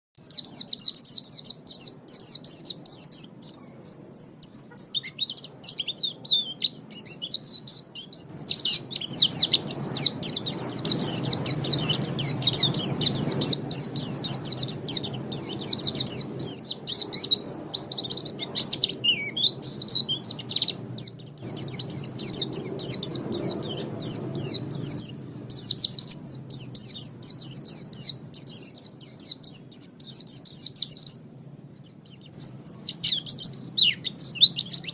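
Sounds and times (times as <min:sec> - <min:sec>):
bird twittering song: 0:00.2 - 0:34.9
low background rumble: 0:00.4 - 0:34.9.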